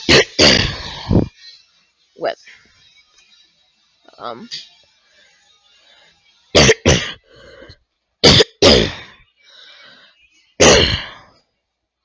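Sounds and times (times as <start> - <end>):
person coughing: 0.0 - 0.9, 8.2 - 9.1, 10.6 - 11.2
faint breaths: 5.0 - 6.4, 7.2 - 8.1, 9.0 - 11.6.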